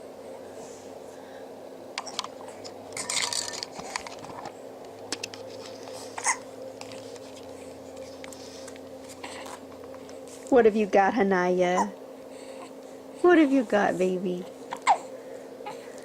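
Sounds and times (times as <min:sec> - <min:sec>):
small clicks and rustles: 0:02.0 - 0:10.6
baby hiccupping: 0:06.2 - 0:06.5, 0:14.7 - 0:15.9.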